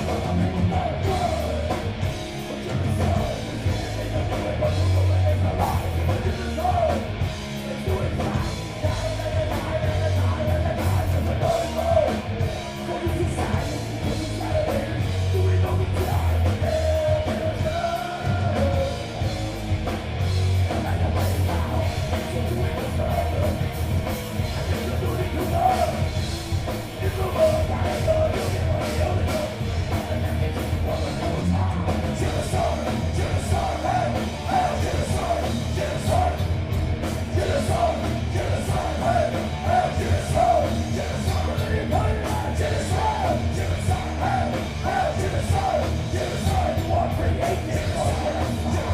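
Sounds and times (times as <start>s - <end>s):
bass guitar: 0.0s - 48.9s
distorted electric guitars: 0.0s - 48.9s
pounding drum kit: 0.0s - 48.9s.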